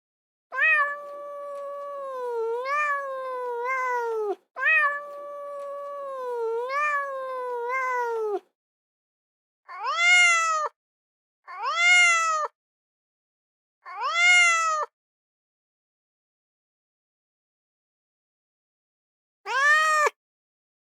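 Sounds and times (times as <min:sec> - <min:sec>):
cat meowing: 0:00.5 - 0:08.4, 0:09.7 - 0:10.8, 0:11.5 - 0:12.5, 0:13.8 - 0:14.9, 0:19.5 - 0:20.2.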